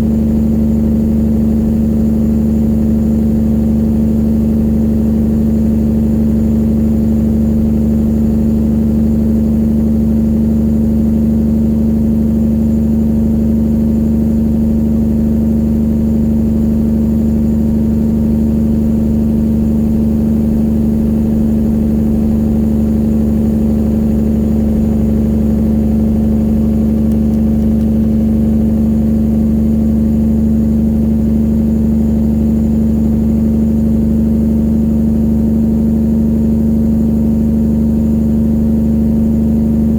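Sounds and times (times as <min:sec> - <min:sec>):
diesel truck engine droning: 0:18.8 - 0:31.6.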